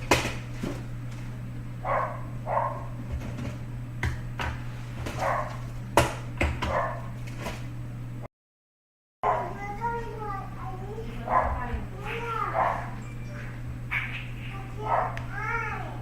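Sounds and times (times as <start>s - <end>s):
low electrical hum: 0.0s - 8.3s, 9.2s - 16.0s
dog barking: 1.8s - 3.0s, 5.2s - 5.7s, 6.6s - 7.2s, 9.2s - 9.6s, 11.2s - 13.0s, 14.8s - 15.3s.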